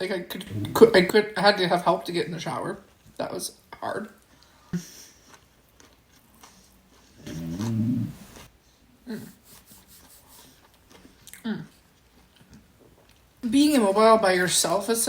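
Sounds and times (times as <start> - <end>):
stomach growling: 0.3 - 1.2, 7.2 - 8.5.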